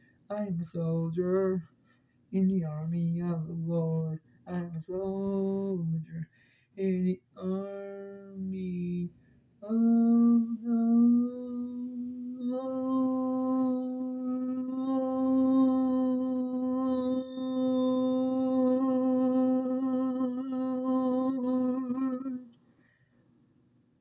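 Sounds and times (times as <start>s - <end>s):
person singing a held note: 9.6s - 22.6s.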